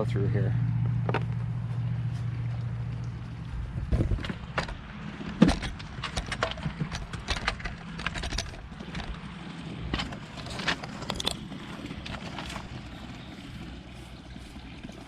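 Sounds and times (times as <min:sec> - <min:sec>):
low steady hum: 0:00.0 - 0:15.0
plastic parts clicking and tapping: 0:04.2 - 0:09.2.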